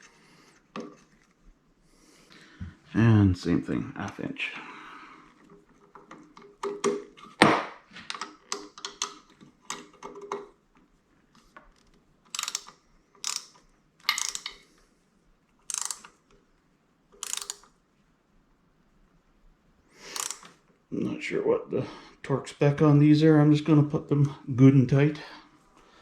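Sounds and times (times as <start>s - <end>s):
ratchet wrench clicking: 12.3s - 14.6s, 15.7s - 16.2s, 17.2s - 17.7s, 20.1s - 20.5s.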